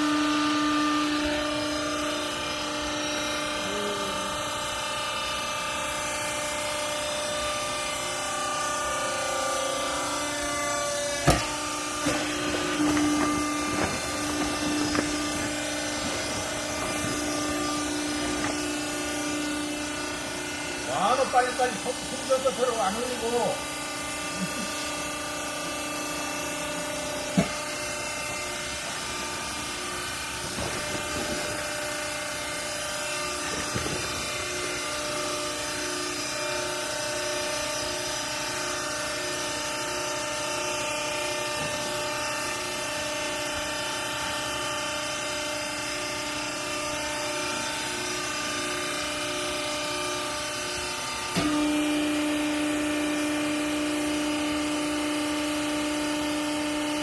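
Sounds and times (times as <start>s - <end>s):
baler motor humming: 0.0s - 38.8s.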